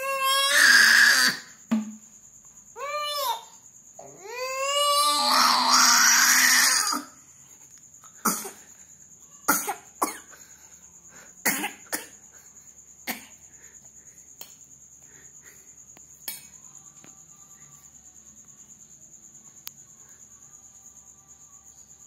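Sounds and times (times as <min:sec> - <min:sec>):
person coughing hard: 0:08.2 - 0:08.6, 0:09.5 - 0:10.4, 0:11.4 - 0:12.2, 0:13.0 - 0:13.4.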